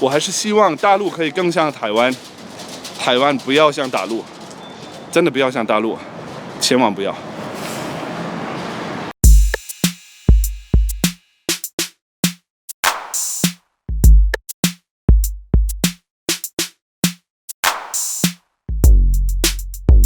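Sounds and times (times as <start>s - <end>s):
drum machine beat: 9.2s - 20.0s.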